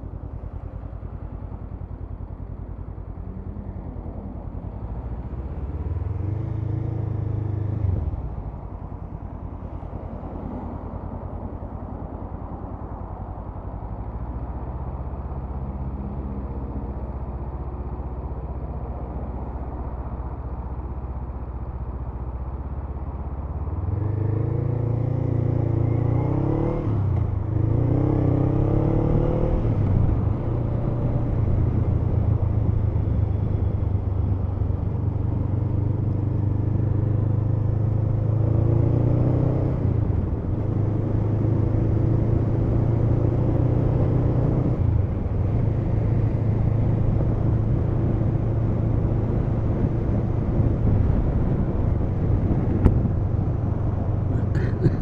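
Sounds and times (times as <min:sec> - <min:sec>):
motorcycle engine accelerating: 0:23.7 - 0:55.0.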